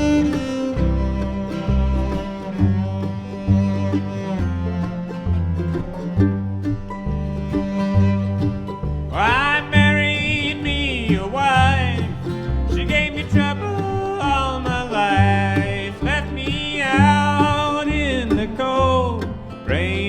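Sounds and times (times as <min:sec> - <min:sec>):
bluegrass band playing: 0:00.0 - 0:20.0.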